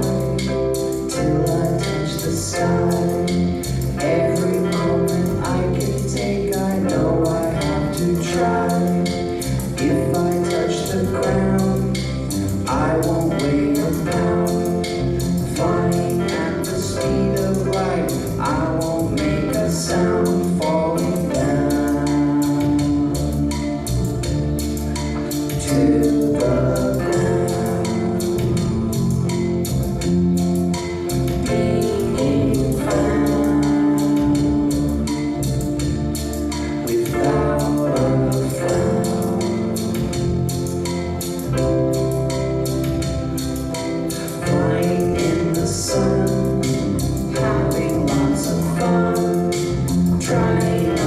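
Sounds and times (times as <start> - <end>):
live band playing pop song: 0.0 - 51.0.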